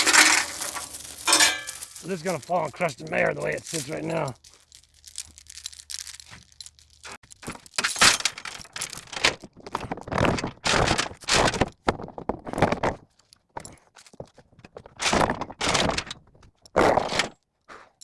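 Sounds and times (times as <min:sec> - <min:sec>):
metal chain rattling: 0:00.0 - 0:11.1.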